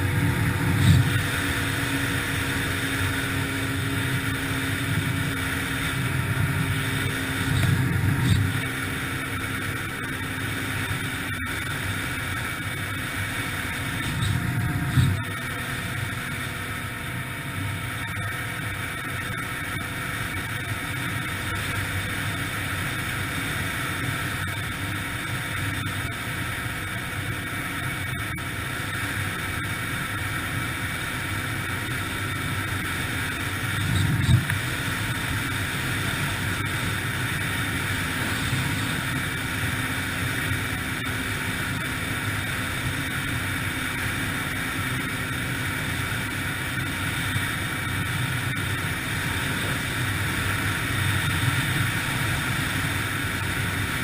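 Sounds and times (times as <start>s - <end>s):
dirt bike engine running: 0.0s - 54.0s
wind on microphone: 33.7s - 39.2s.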